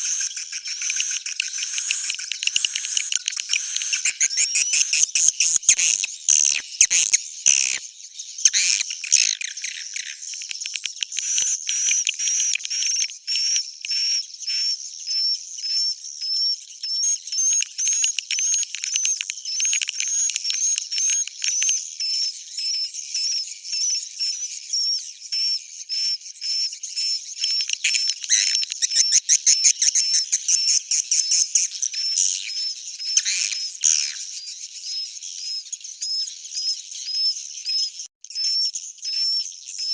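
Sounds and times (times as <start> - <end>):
swiftlet twittering calls: 0.0 - 7.8, 8.4 - 15.9, 17.0 - 22.3, 26.0 - 39.9
short bird chirps: 8.4 - 22.8, 26.4 - 31.4.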